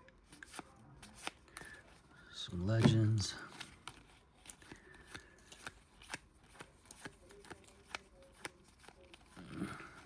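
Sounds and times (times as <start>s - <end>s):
trading cards being flipped: 2.6s - 9.4s.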